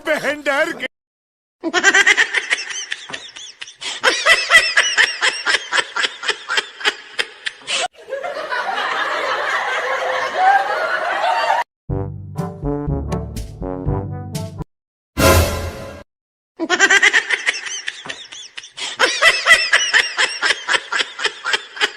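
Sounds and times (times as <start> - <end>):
person laughing: 1.6 - 7.9, 16.6 - 21.9.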